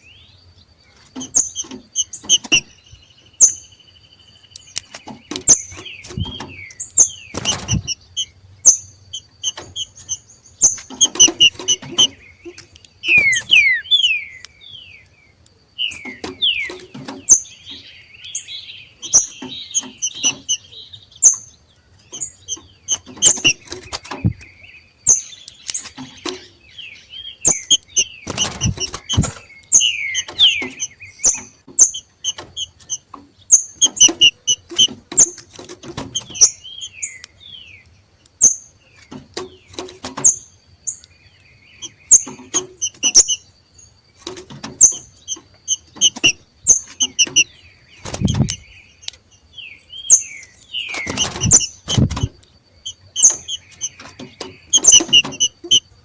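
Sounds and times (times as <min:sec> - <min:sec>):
birds chipping calls: 0:00.0 - 0:56.0
sharp clicks: 0:04.5 - 0:17.3, 0:19.0 - 0:20.7, 0:22.1 - 0:24.5, 0:27.5 - 0:33.2, 0:33.8 - 0:37.4, 0:41.8 - 0:43.4, 0:44.2 - 0:49.2, 0:50.4 - 0:55.8
faint steady high tone: 0:13.0 - 0:14.4.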